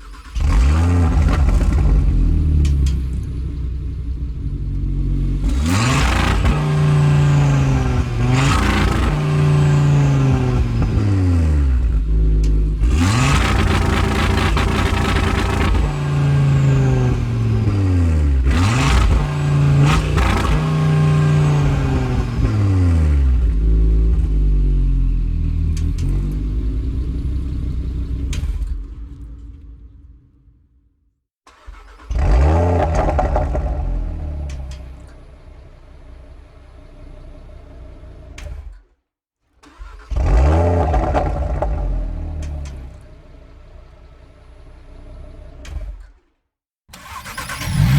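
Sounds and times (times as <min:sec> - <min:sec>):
exhaust pops and crackles: 0:00.5 - 0:03.3, 0:12.3 - 0:16.1, 0:32.8 - 0:34.9, 0:40.8 - 0:43.0
car engine revving: 0:04.2 - 0:28.7, 0:31.6 - 0:38.8, 0:39.6 - 0:45.8, 0:46.9 - 0:47.9.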